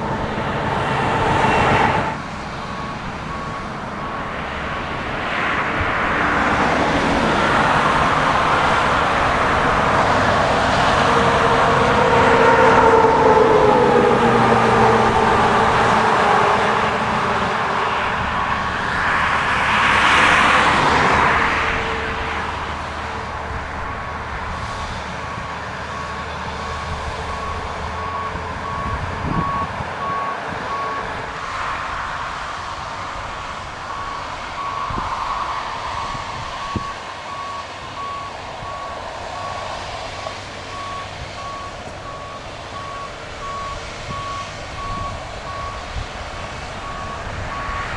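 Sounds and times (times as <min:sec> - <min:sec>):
railcar mover engine: 0:00.0 - 0:47.9
backup alarm beeping: 0:02.1 - 0:04.4, 0:17.0 - 0:19.4, 0:25.8 - 0:31.2, 0:40.7 - 0:45.8.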